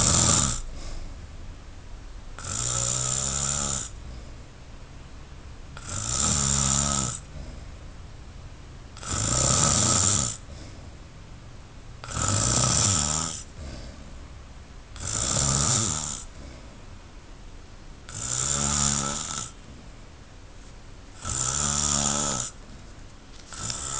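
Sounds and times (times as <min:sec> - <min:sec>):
man snoring: 0:00.0 - 0:00.9, 0:02.4 - 0:04.0, 0:05.8 - 0:07.7, 0:09.0 - 0:10.6, 0:12.0 - 0:14.0, 0:15.0 - 0:16.6, 0:18.1 - 0:19.6, 0:21.2 - 0:22.6, 0:23.5 - 0:23.9.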